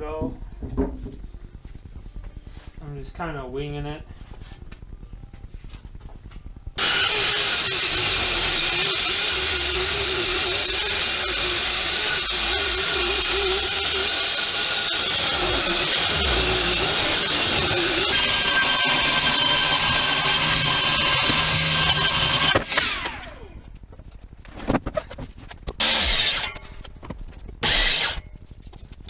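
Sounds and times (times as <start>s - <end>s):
power tool motor whining: 6.8s - 23.8s, 25.8s - 26.7s, 27.6s - 28.3s.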